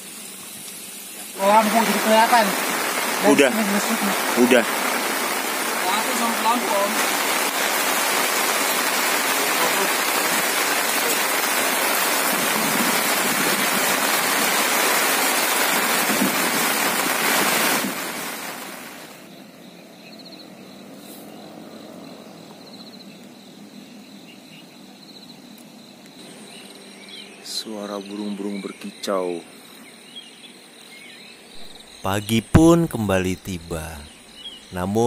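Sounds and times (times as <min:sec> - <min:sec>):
heavy rain falling: 0:00.0 - 0:19.3, 0:31.6 - 0:35.0.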